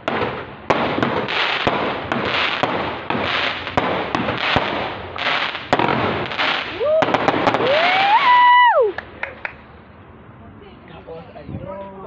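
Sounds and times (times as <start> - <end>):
firework bangs: 0.0 - 9.4
fireworks crackling: 0.0 - 9.8.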